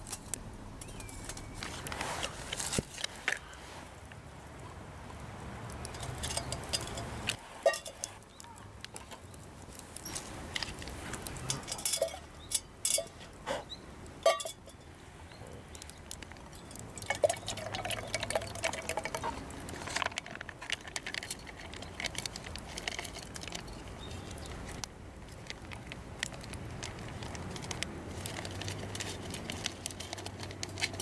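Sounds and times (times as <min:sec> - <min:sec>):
campfire crackles: 0:00.0 - 0:31.0
liquid pouring into pot: 0:17.0 - 0:19.5.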